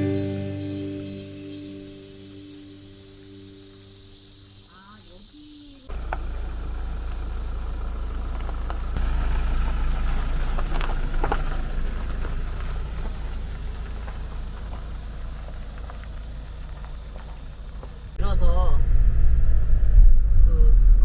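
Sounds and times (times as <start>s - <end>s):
vehicle engine rumble: 5.2s - 21.0s.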